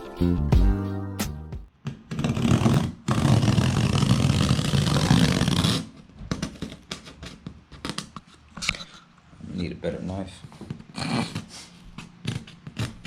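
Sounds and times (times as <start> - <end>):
knife cutting cardboard: 2.0 - 8.2, 11.0 - 13.0.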